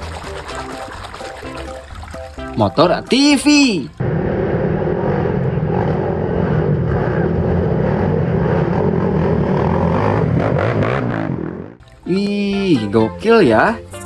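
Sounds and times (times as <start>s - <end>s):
quad bike engine running: 4.0s - 11.8s.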